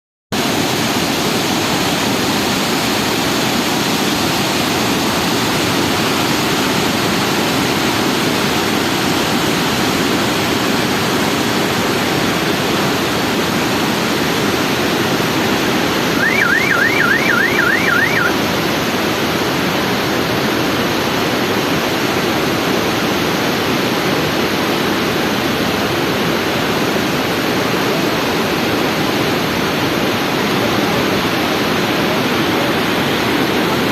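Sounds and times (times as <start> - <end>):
water rushing over dam: 0.4 - 33.9
high warbling sound: 16.0 - 18.4.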